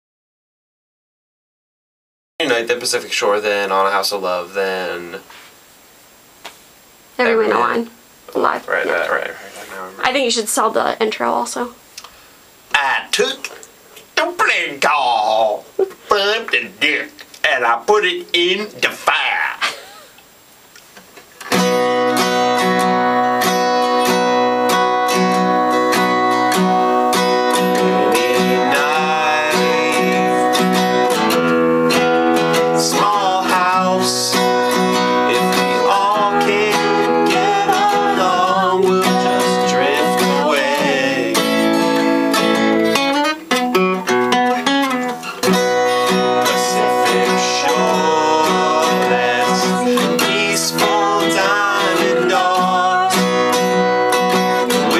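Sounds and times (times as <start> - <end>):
acoustic guitar strumming: 21.4 - 54.9
person singing: 26.6 - 31.2, 32.5 - 42.2, 46.1 - 53.8, 54.6 - 54.9.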